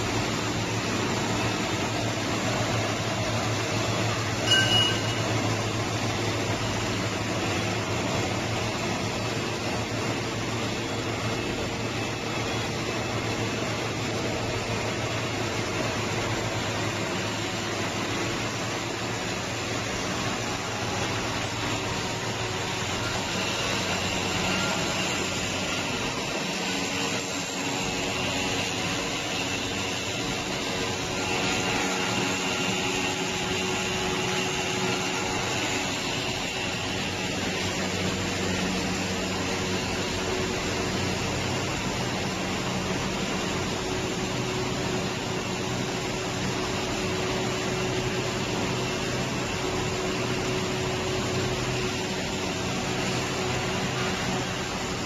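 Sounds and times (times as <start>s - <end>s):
production line machinery running: 0.0s - 55.0s
faint high whine: 3.5s - 5.9s.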